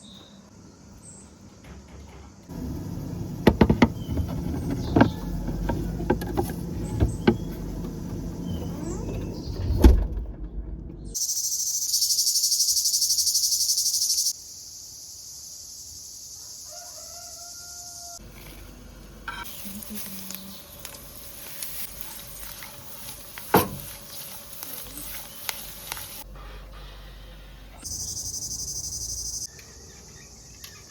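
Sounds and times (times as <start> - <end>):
low rumbling: 2.5 - 11.2
insect chorus pulsing trill: 11.2 - 18.2, 27.8 - 30.3
sharp knocks: 23.5 - 23.9.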